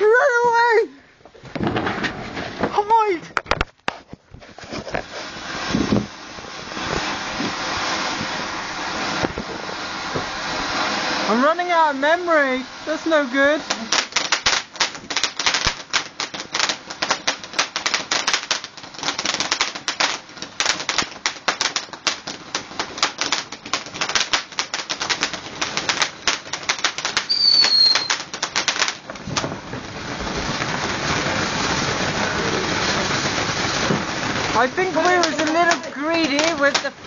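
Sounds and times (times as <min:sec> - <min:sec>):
fireworks cracking and banging: 0:00.0 - 0:37.0
steady hiss: 0:00.0 - 0:37.0
falling firework whistle: 0:26.8 - 0:36.5.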